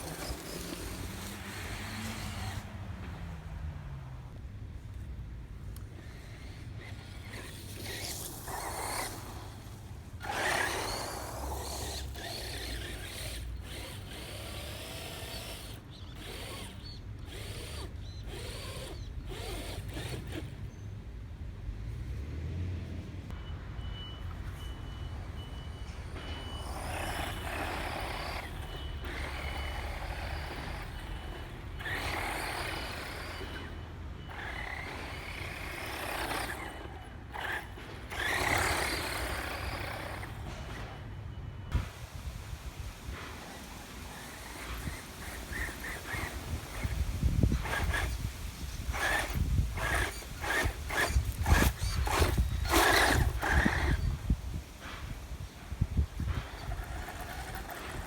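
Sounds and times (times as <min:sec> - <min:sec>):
rc car motor whine: 0:00.0 - 0:03.5, 0:04.3 - 0:20.9, 0:24.3 - 0:58.0.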